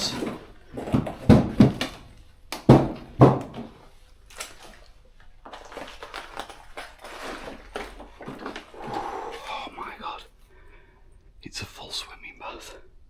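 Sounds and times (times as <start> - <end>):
footsteps crunching through rubble: 0.0 - 9.0.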